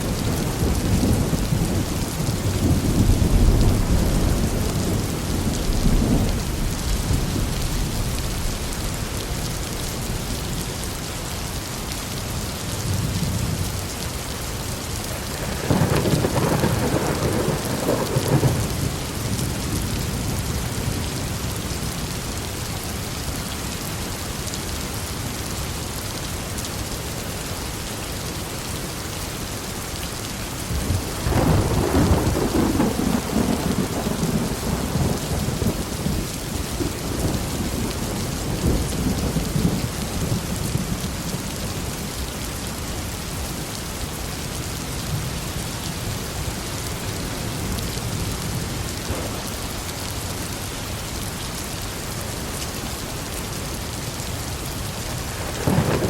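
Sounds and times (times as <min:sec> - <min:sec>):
thunder rumbling: 0:00.0 - 0:09.6, 0:15.2 - 0:20.9, 0:30.7 - 0:41.6, 0:47.6 - 0:50.2, 0:55.2 - 0:56.0
heavy rain falling: 0:00.0 - 0:56.0.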